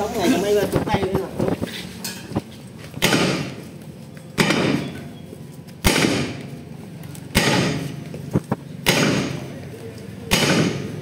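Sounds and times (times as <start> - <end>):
hammer striking steel: 3.0 - 3.6, 4.4 - 5.0, 5.8 - 6.5, 7.3 - 8.0, 8.8 - 9.5, 10.3 - 11.0.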